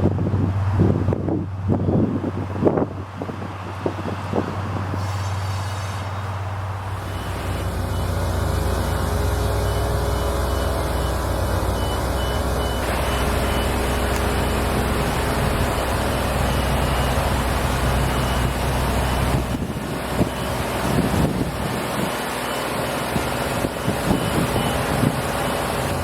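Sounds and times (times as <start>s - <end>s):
diesel locomotive engine running: 0.0s - 26.0s
faint high beep: 7.0s - 8.2s.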